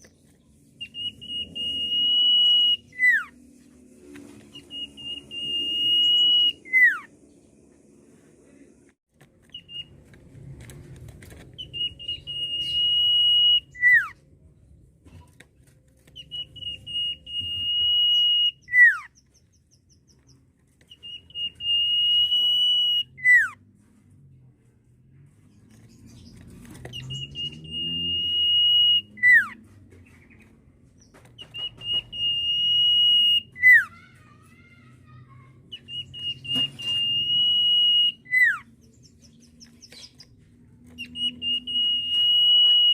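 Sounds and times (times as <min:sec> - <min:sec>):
bird long drawn whistle: 0:00.8 - 0:03.4, 0:04.5 - 0:07.1, 0:11.7 - 0:14.1, 0:16.2 - 0:19.1, 0:21.0 - 0:23.5, 0:27.1 - 0:29.5, 0:31.5 - 0:33.8, 0:35.7 - 0:38.6, 0:41.0 - 0:42.9.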